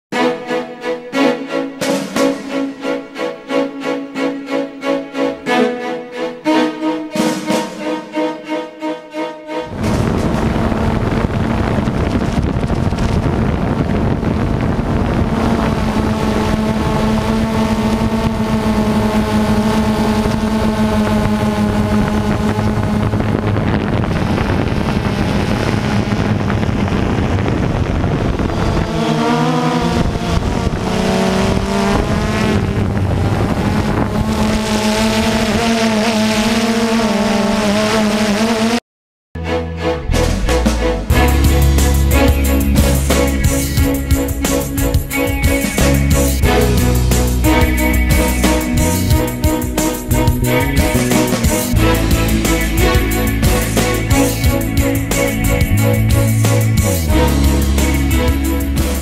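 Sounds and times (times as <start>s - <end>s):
wind noise on microphone: 9.6s - 36.5s, 41.1s - 59.0s
drone motors humming: 9.6s - 38.8s, 41.1s - 59.0s.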